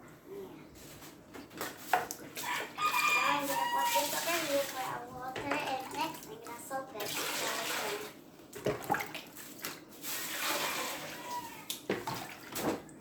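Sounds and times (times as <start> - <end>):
water pouring into basin: 2.8 - 6.4, 7.0 - 12.5.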